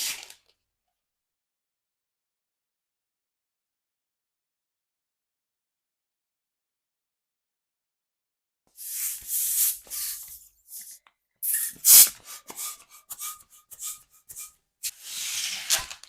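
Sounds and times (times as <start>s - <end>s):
balloon rubber rubbing: 8.8s - 14.5s
balloon squeaks: 8.8s - 14.5s.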